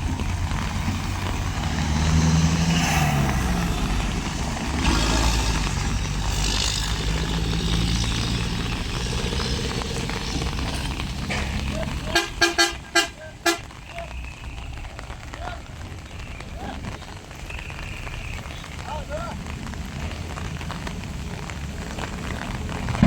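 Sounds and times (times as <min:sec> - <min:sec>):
heavy diesel engine running: 0:00.0 - 0:13.5.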